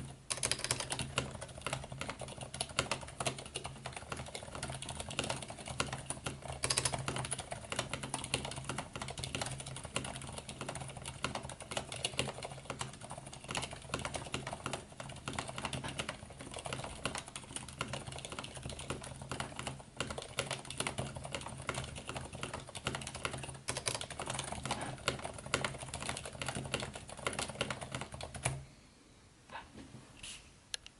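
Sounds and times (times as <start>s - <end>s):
fast typing on mechanical keyboard: 0.0s - 28.6s.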